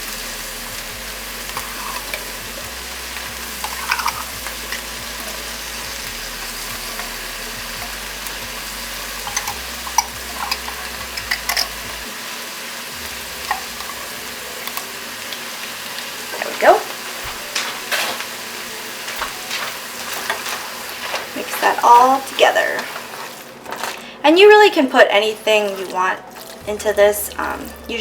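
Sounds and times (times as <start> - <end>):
meat sizzling in a skillet: 0.0 - 28.0
spatula scraping and tapping pan: 3.6 - 4.8, 9.2 - 11.8.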